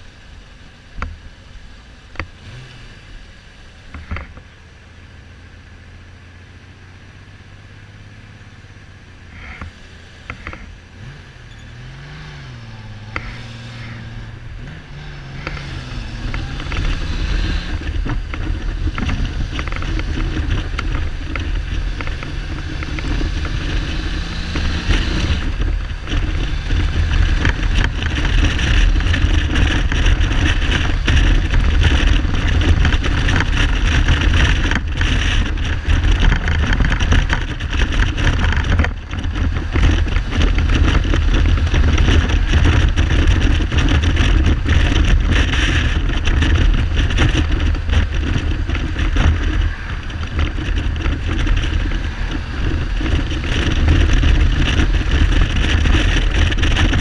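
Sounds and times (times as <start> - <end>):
motorcycle engine running: 0.0 - 57.0
wind buffeting microphone: 12.2 - 57.0
helmet rattles: 24.6 - 57.0.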